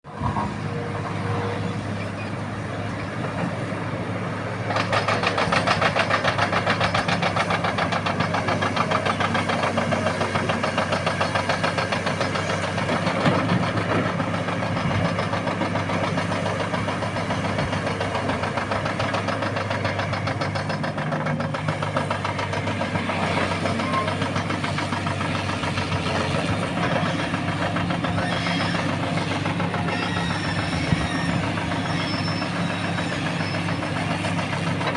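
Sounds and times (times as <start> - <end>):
excavator diesel engine running: 0.1 - 34.9.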